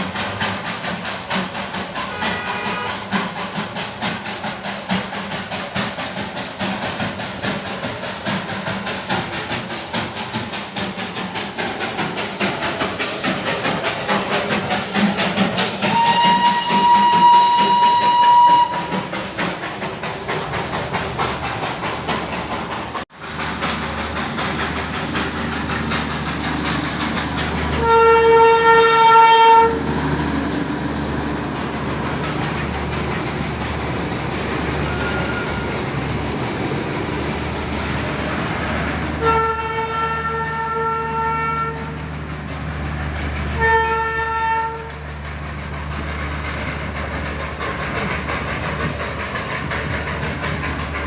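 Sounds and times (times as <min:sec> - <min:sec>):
clatter of train wheels: 0:00.0 - 0:51.0
high train whistle: 0:02.0 - 0:03.1, 0:15.8 - 0:19.0, 0:27.8 - 0:29.9, 0:34.8 - 0:35.9, 0:39.2 - 0:42.0, 0:43.6 - 0:45.0.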